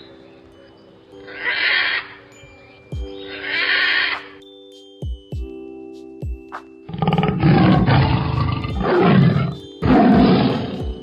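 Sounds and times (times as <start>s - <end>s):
music: 0.0s - 11.0s
animal roaring: 6.9s - 11.0s.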